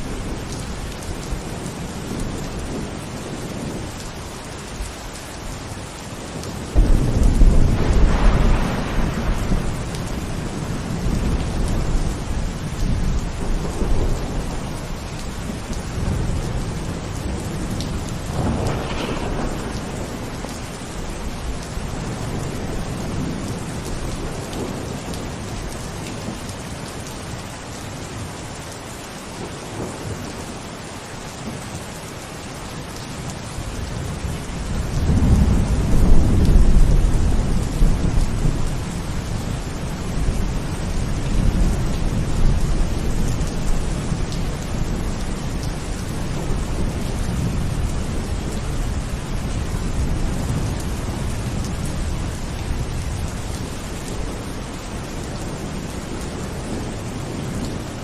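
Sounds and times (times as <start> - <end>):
steady rain: 0.0 - 58.0
rolling thunder: 6.3 - 25.2, 33.8 - 54.4.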